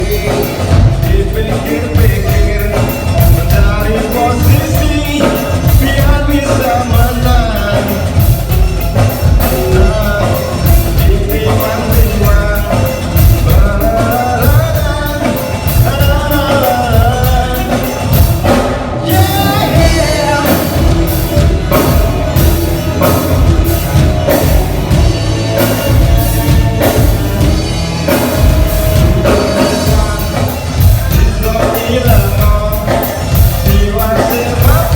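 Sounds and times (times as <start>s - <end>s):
drum kit: 0.0s - 34.9s
lead singer singing: 0.0s - 34.9s
rock band playing: 0.0s - 34.9s.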